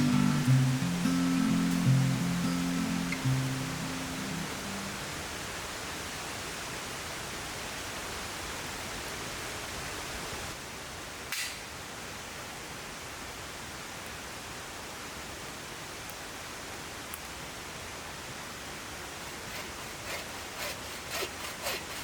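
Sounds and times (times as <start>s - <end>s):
river rushing: 0.0s - 10.6s
short sharp click: 11.3s - 11.6s.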